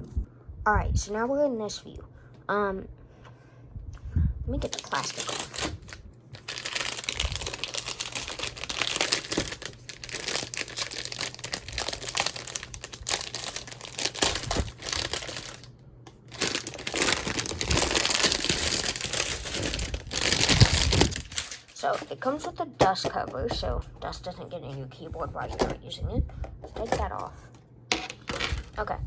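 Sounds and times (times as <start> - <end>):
plastic wrapping crinkling: 4.6 - 22.4, 28.0 - 29.0.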